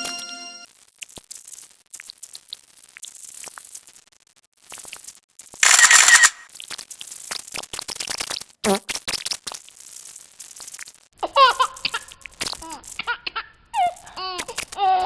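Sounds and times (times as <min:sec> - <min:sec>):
scattered clicks: 0:05.6 - 0:06.4.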